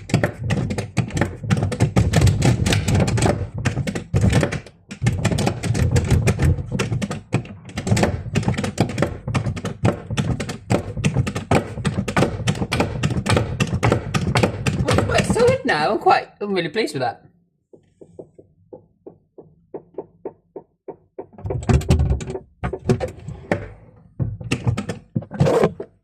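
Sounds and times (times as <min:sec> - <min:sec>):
rapid tapping and knocking: 0:00.0 - 0:15.7, 0:17.7 - 0:23.0.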